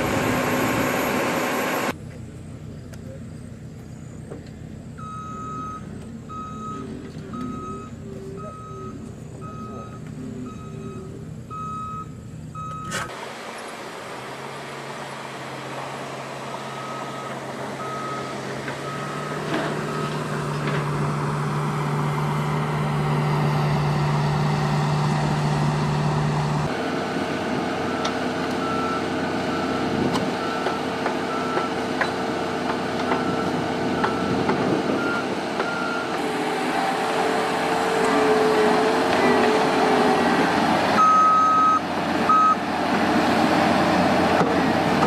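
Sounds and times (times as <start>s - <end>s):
heavy machine engine running: 0.0s - 45.0s
backup alarm beeping: 5.0s - 12.9s, 16.8s - 20.3s, 41.0s - 42.6s.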